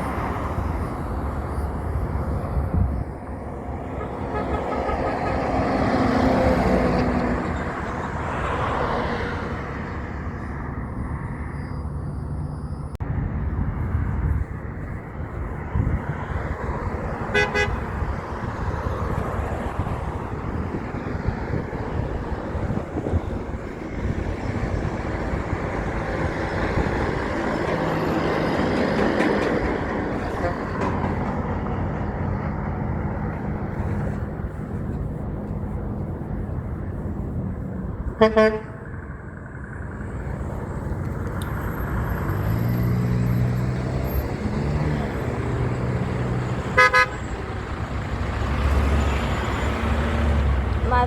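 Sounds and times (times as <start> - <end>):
trucks passing on road: 0.0 - 51.0
truck horn honks: 3.9 - 6.2, 17.3 - 18.0, 30.2 - 30.9, 38.2 - 38.9, 46.7 - 47.4.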